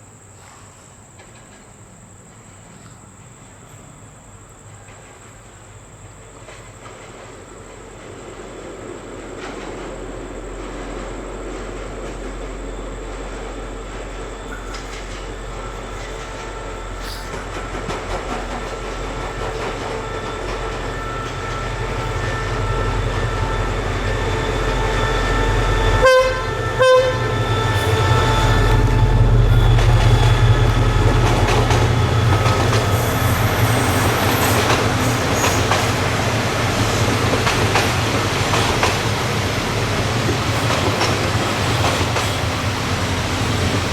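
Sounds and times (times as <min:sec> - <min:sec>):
locomotive engine drone: 0:07.8 - 0:43.9
train horn blasts: 0:19.9 - 0:35.6.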